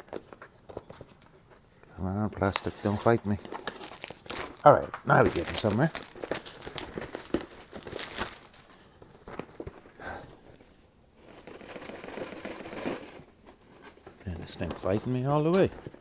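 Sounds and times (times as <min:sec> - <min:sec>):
plastic wrapping crinkling and tearing: 0:02.2 - 0:09.7.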